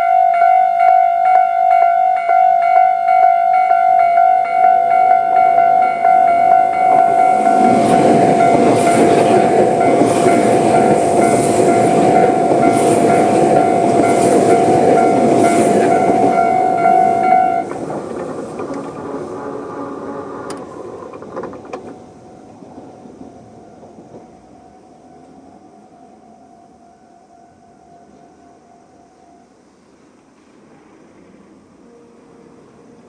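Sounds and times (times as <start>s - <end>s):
level-crossing alarm ringing: 0.0s - 17.8s
train rumbling and clattering: 0.7s - 26.2s.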